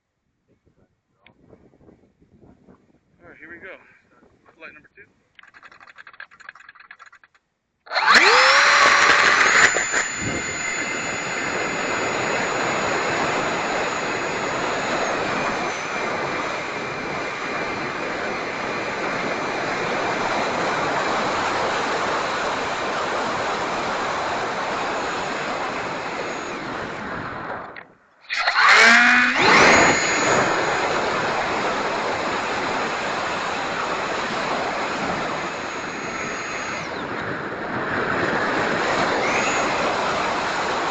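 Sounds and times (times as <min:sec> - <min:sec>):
electric ducted fan whine: 0:07.9 - 0:27.8, 0:28.4 - 0:40.9.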